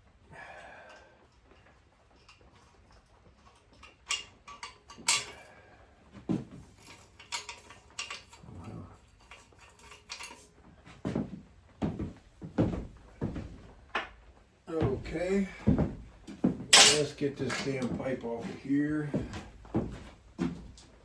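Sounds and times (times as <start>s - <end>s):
metal tools clinking: 2.2s - 5.6s, 6.6s - 10.6s, 16.7s - 18.0s.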